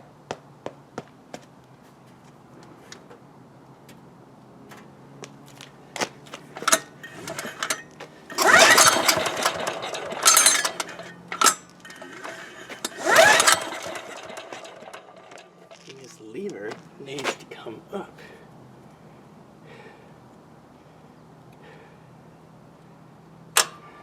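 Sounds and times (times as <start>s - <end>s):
engine pull-start cranking: 6.6s - 15.9s.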